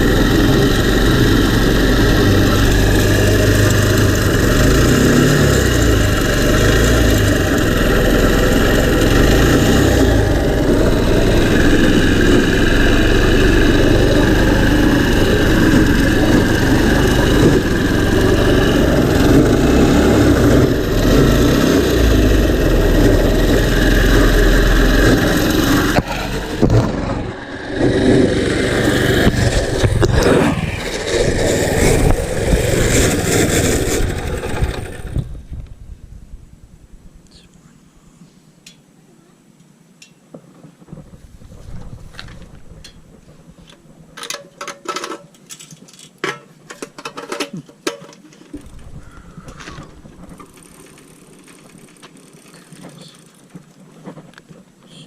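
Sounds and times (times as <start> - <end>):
go-kart engine revving: 0.0 - 35.5, 48.5 - 53.5.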